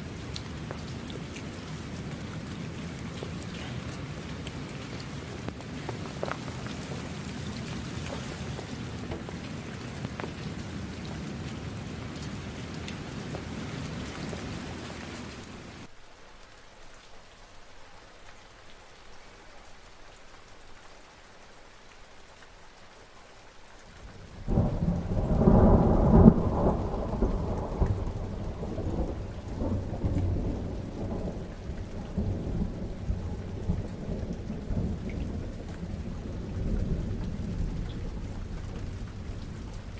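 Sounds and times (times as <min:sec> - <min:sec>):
steady rain: 0:00.0 - 0:39.9
thunder peal rumbling: 0:24.5 - 0:39.9.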